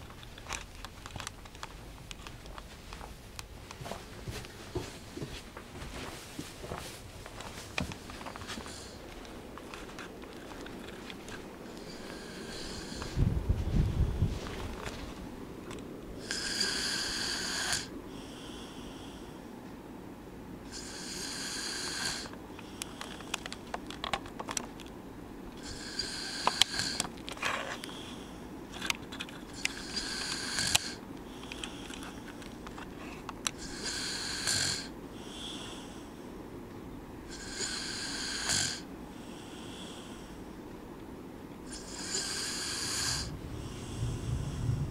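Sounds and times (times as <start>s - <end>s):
soft breaths: 0.0s - 15.4s, 16.2s - 19.8s, 20.7s - 24.0s, 25.6s - 36.5s, 37.2s - 40.9s, 41.6s - 44.9s
person snoring: 11.7s - 13.2s, 16.2s - 19.3s, 20.7s - 22.3s, 25.6s - 27.1s, 29.5s - 31.8s, 33.6s - 36.1s, 37.3s - 40.4s, 41.7s - 44.9s.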